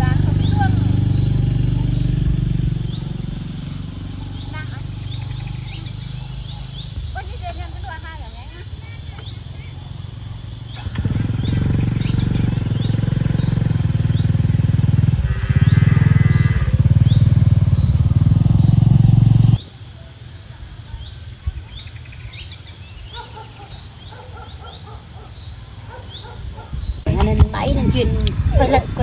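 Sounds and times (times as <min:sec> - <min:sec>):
wind buffeting microphone: 0:00.0 - 0:19.6, 0:26.2 - 0:29.0
faint chirps: 0:00.0 - 0:29.0.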